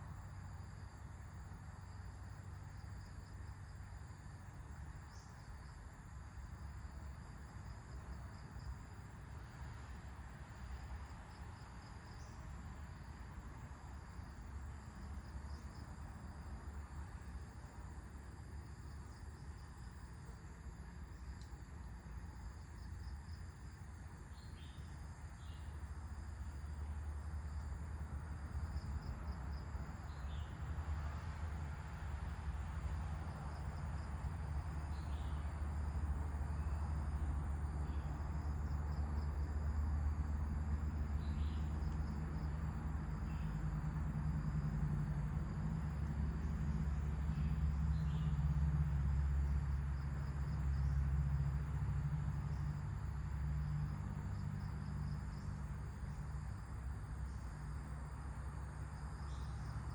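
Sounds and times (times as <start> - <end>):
insects trilling: 0.1 - 10.0, 10.6 - 59.9.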